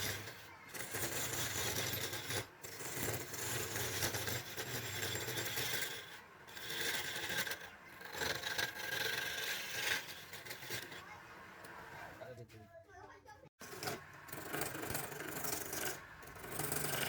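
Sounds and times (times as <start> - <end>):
lathe motor hum: 0.0 - 12.3, 13.6 - 17.0
tool scraping spinning wood: 0.0 - 12.3, 13.6 - 17.0.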